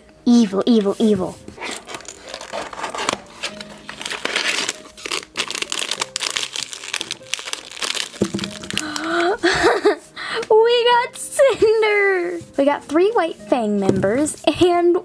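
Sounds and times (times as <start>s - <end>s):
packaging crinkling and rustling: 0.7s - 10.0s.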